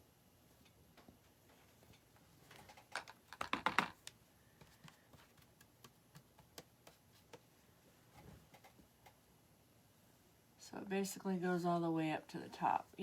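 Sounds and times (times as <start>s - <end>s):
paintbrush dabbing paint on canvas: 4.6s - 7.5s.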